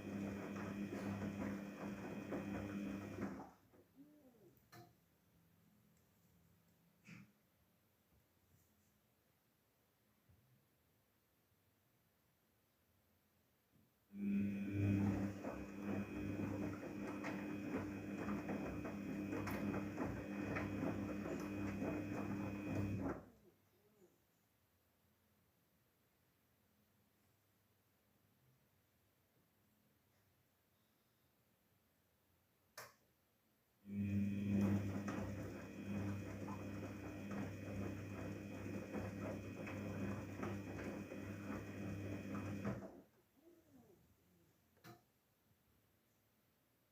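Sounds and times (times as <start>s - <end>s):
washing machine motor hum: 0.0s - 4.4s, 14.1s - 23.4s, 33.9s - 43.1s.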